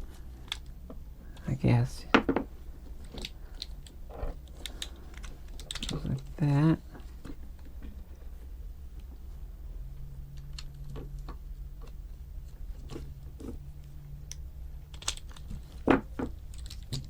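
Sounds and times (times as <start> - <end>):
low steady hum: 0.0 - 17.0
plastic parts clicking and knocking: 0.3 - 8.2, 12.8 - 17.0.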